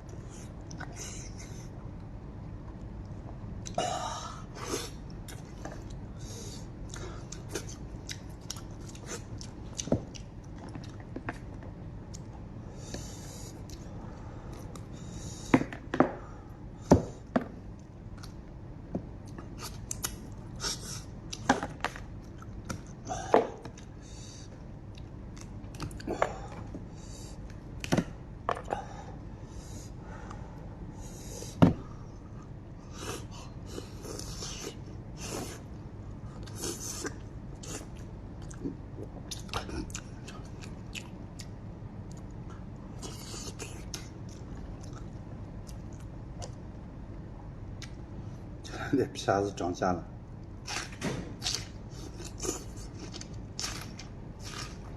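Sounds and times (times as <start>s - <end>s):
quiet chewing: 6.8s - 12.3s, 36.3s - 46.7s, 51.4s - 54.9s
chewing and biting: 6.9s - 11.5s.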